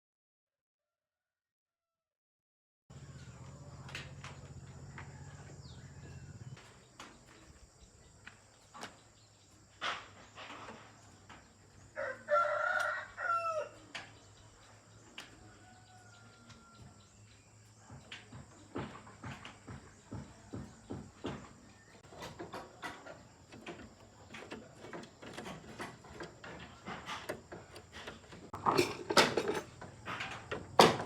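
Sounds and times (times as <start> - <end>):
rooster crowing: 4.5 - 6.6, 12.0 - 13.9, 15.4 - 17.2
light clicks and knocks: 18.1 - 31.0.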